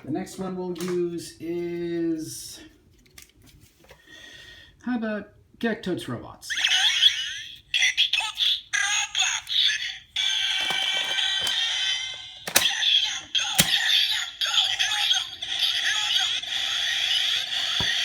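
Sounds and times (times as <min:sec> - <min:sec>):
electronic toy voice: 0:06.5 - 0:18.0.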